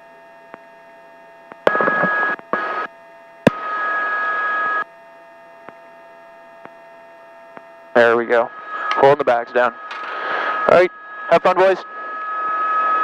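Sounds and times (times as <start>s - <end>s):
faint steady whine of tones: 0.0s - 13.0s
rushing cabin and rotor noise: 7.9s - 13.0s.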